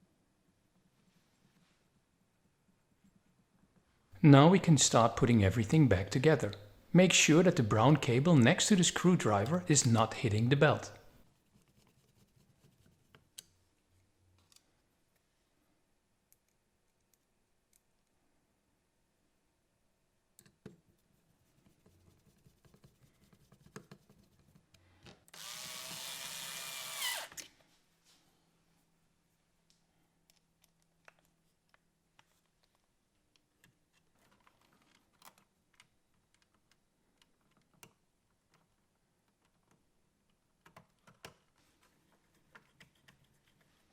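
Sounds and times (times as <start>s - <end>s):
faint clicks of small parts: 14.3s - 15.3s, 29.6s - 43.9s.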